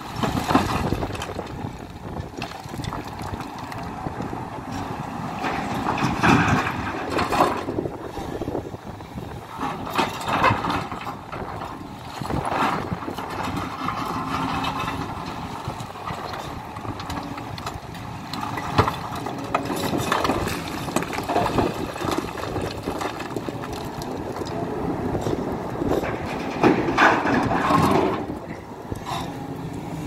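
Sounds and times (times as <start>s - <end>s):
rocks clattering and knocking: 0.0s - 29.5s
bucket scraping: 9.6s - 29.5s.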